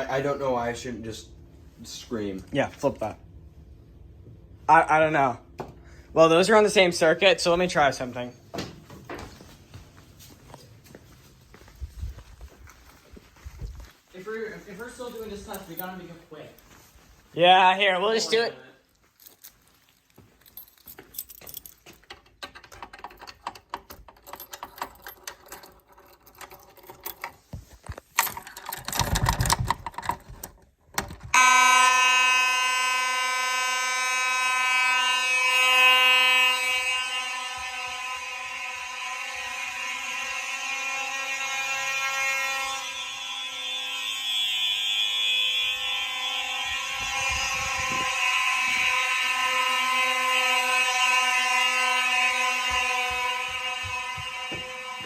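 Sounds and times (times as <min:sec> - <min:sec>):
buzzing fire alarm: 0:04.7 - 0:18.5, 0:20.4 - 0:22.0, 0:31.3 - 0:55.0
clicks and handling noise: 0:20.6 - 0:31.4.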